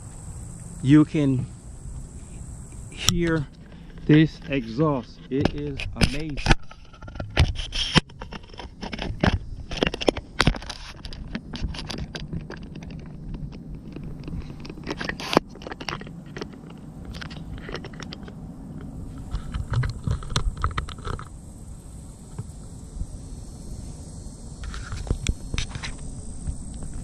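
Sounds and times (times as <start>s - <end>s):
steady low rumble: 0.0s - 7.4s, 8.0s - 27.0s
handling clicks knocks and scrapes: 2.2s - 21.4s, 24.6s - 27.0s.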